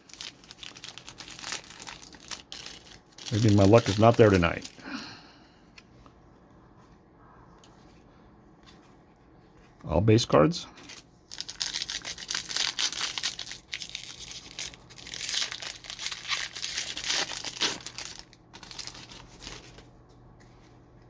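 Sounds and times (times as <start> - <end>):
foil wrapper tearing and crinkling: 0.0 - 4.8, 11.3 - 19.9.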